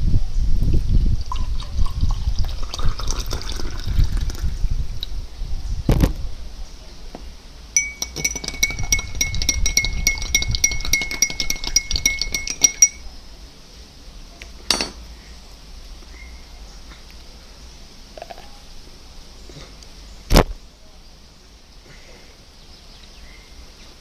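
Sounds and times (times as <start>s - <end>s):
metal spoon clinking in glass: 7.8s - 13.0s, 14.7s - 15.0s.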